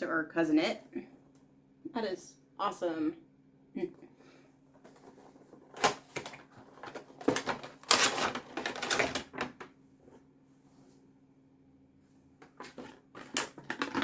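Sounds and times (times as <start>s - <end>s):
crinkly packaging rustling: 4.8s - 9.7s, 12.4s - 14.0s
packaging clicks: 5.8s - 9.6s.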